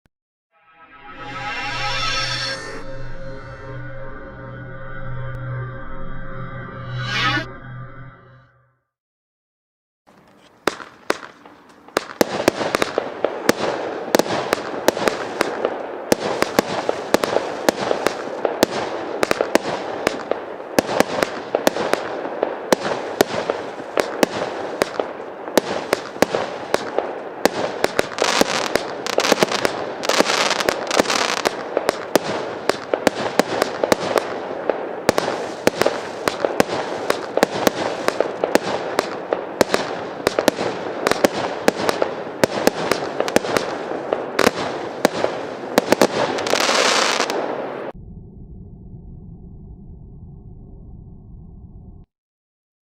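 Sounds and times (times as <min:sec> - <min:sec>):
firework pops: 0:10.1 - 0:22.1, 0:22.7 - 0:34.3, 0:35.1 - 0:47.4
firework bangs and crackling: 0:10.5 - 0:48.0.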